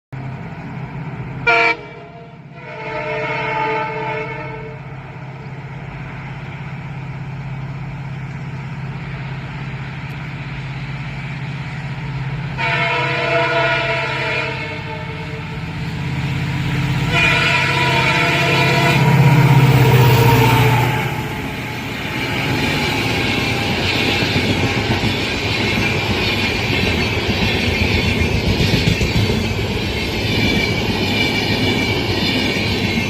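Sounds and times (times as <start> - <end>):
low train drone: 0.1 - 33.0
locomotive horn blasts: 1.4 - 4.9, 12.5 - 15.7, 17.0 - 21.4.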